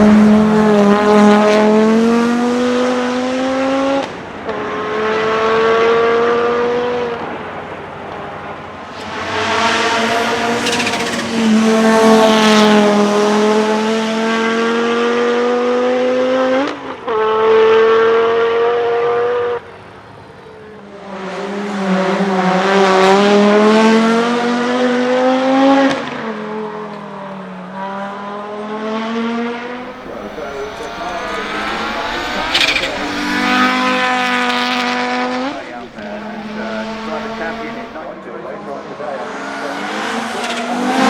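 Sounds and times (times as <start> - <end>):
turbocharged engine revving under load: 8.8 - 19.6, 27.8 - 38.2.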